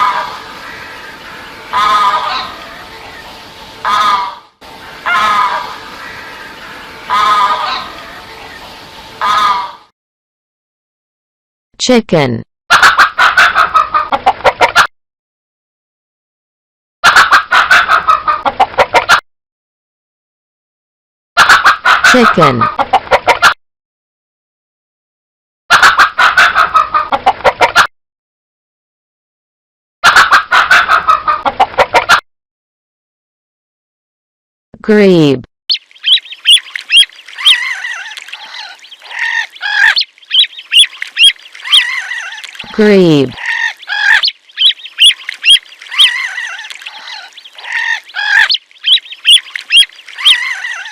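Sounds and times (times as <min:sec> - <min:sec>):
grebe calling: 0:00.0 - 0:03.2, 0:03.8 - 0:08.6, 0:09.2 - 0:09.9, 0:22.0 - 0:22.8, 0:35.7 - 0:50.9
chicken clucking: 0:05.0 - 0:08.6, 0:12.7 - 0:14.9, 0:17.0 - 0:19.2, 0:21.4 - 0:23.6, 0:25.7 - 0:27.9, 0:30.0 - 0:32.2, 0:43.4 - 0:50.9.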